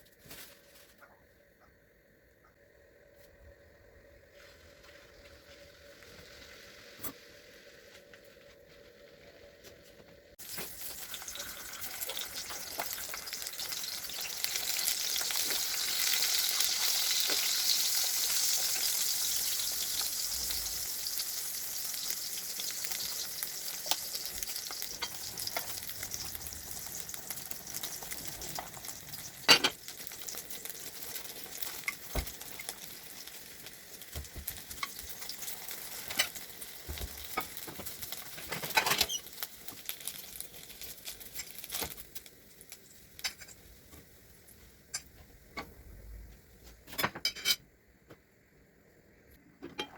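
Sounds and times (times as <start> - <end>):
food sizzling in oil: 4.5 - 7.9, 10.4 - 45.2.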